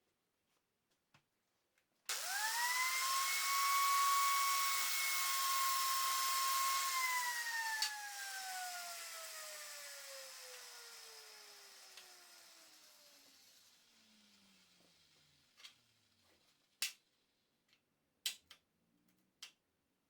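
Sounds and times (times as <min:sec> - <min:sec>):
power tool whine: 0:02.1 - 0:16.3.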